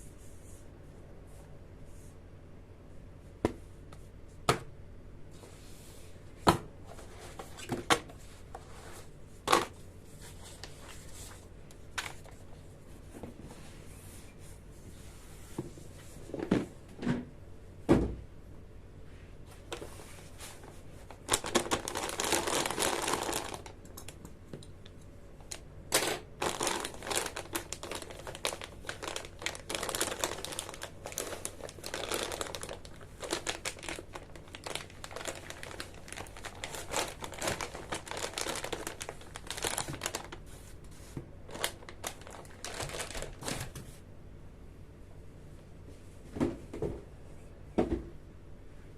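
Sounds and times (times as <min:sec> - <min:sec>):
packaging crinkling and rustling: 0:09.0 - 0:12.5, 0:19.6 - 0:24.2, 0:25.4 - 0:44.0.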